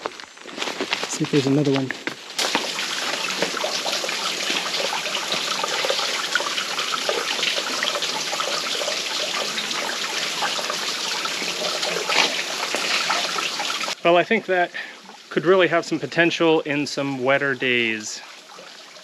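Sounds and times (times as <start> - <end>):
small waterfall trickling: 1.1 - 19.0.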